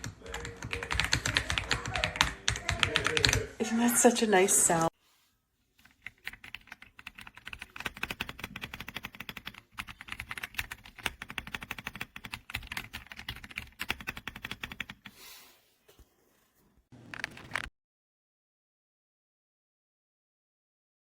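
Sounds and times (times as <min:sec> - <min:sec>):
typing on mechanical keyboard: 0:00.0 - 0:03.5, 0:05.8 - 0:15.1.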